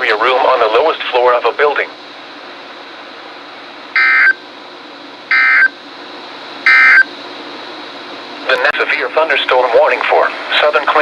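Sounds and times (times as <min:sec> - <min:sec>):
buzzy digital data chirps: 0:04.0 - 0:04.4, 0:05.3 - 0:05.8, 0:06.7 - 0:07.1
faint radio hiss: 0:08.4 - 0:11.0.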